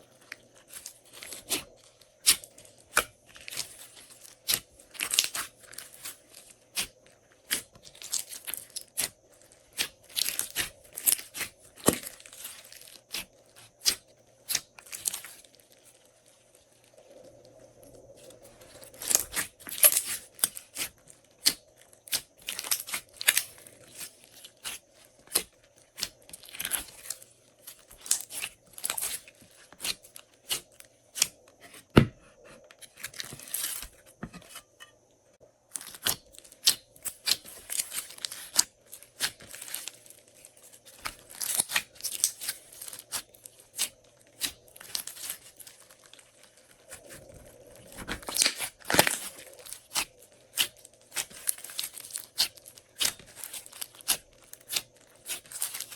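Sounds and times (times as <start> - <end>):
slime squished by hand: 35.7 - 55.9.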